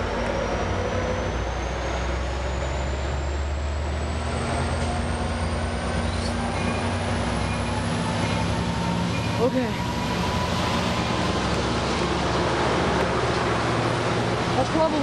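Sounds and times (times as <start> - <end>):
train rolling past rumbling: 0.0 - 15.0.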